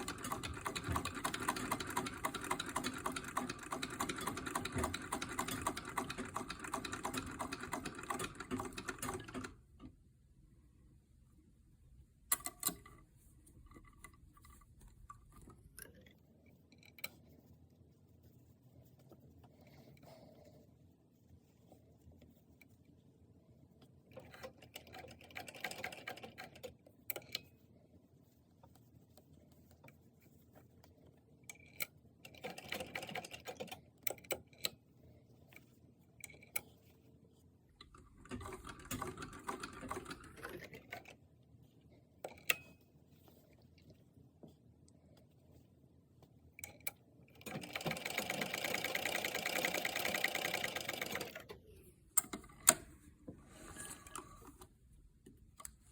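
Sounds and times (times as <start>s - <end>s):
sewing machine stitching: 0.0s - 9.6s, 31.6s - 34.6s, 37.8s - 41.2s, 46.7s - 51.6s
clicks and handling: 51.4s - 55.9s.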